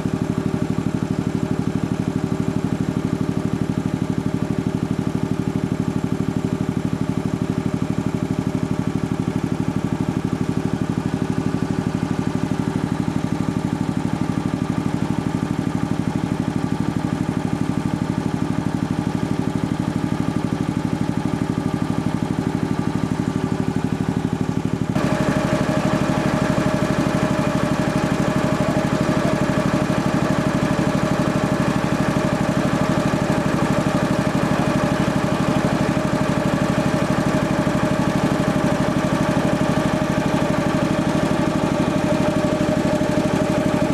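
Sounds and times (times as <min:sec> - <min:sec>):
air compressor running: 0:00.0 - 0:43.9.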